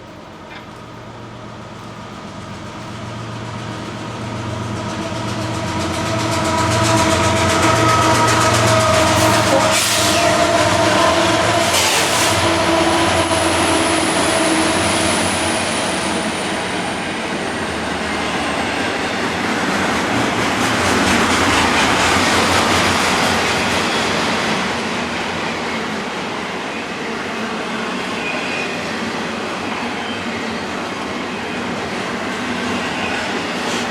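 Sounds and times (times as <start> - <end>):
diesel locomotive engine drone: 0.0 - 33.9
high wheel squeal: 5.6 - 17.3.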